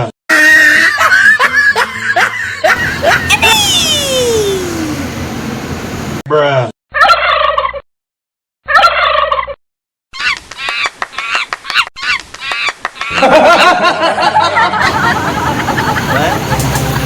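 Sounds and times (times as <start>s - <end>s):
rapid warbling calls: 2.8s - 5.2s.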